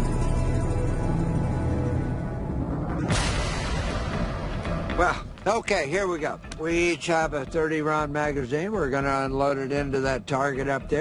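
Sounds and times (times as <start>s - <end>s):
dramatic background music: 0.0s - 11.0s
loud boom-like blast: 2.2s - 5.4s.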